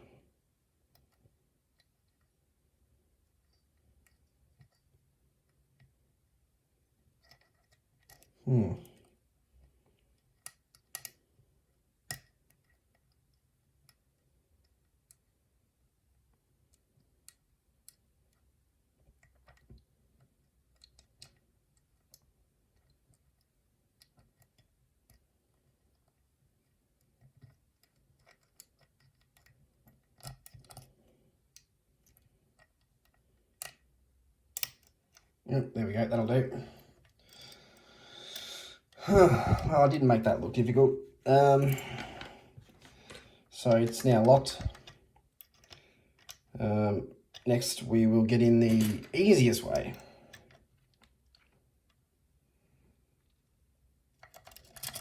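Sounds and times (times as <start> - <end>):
lock-picking tools clicking and scraping: 0.9 - 2.3, 3.3 - 6.0, 7.0 - 11.4, 12.0 - 15.3, 16.7 - 33.9, 34.5 - 35.4, 36.8 - 38.5, 41.5 - 46.6, 48.4 - 52.0, 54.1 - 55.0
lock pick clicks: 10.4 - 11.2, 12.1 - 13.1, 34.5 - 35.3.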